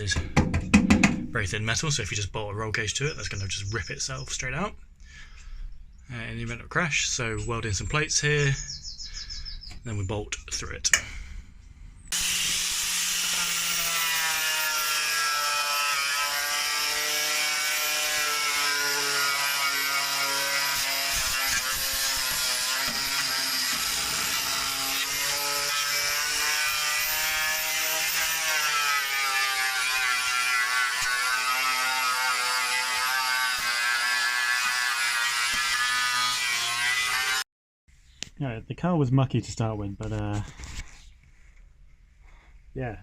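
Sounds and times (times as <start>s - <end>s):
angle grinder grinding sheet metal: 12.1s - 37.4s.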